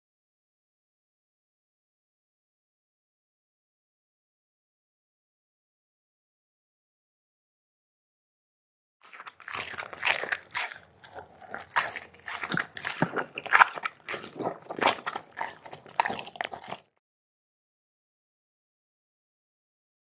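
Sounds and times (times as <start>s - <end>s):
dog chewing and crunching food: 9.0s - 17.0s.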